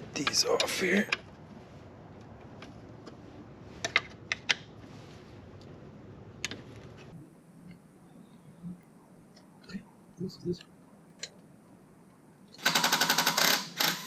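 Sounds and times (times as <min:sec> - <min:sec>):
faint steady hiss: 0:04.8 - 0:13.9.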